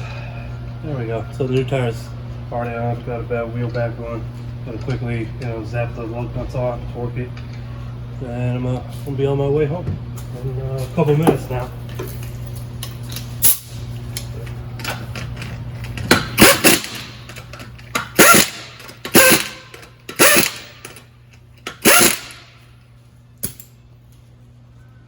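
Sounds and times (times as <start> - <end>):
steady low hum: 0.0 - 25.0
impact wrench hammering bursts: 15.1 - 22.7.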